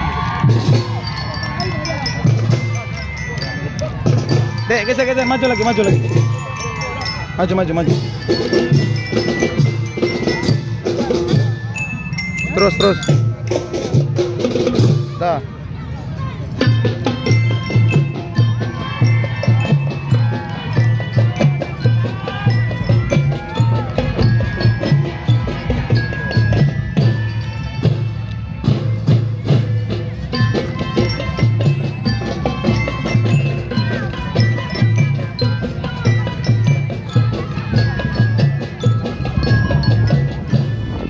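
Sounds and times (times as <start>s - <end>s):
bells melody: 0.0s - 15.3s, 16.2s - 41.0s
bass drum beat: 16.7s - 27.3s.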